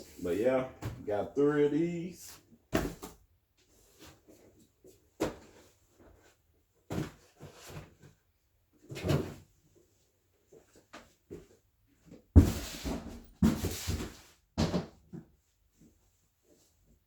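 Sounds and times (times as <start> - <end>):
box thuds with scuffing: 12.4 - 15.0.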